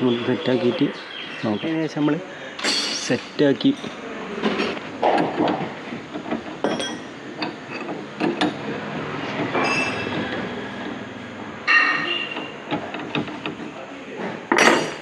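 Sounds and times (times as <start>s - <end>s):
metal parts clinking and clanking: 2.6s - 15.0s
ringing metallic squeal: 9.4s - 12.7s.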